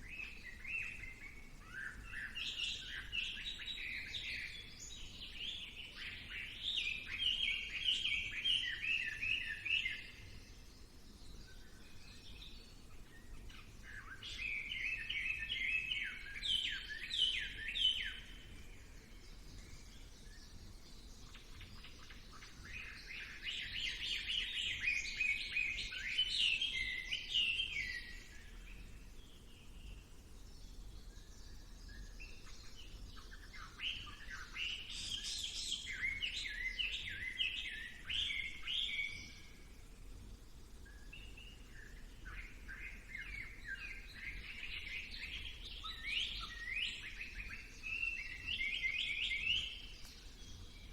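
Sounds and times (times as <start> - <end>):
songbird chirping: 0.0 - 50.9.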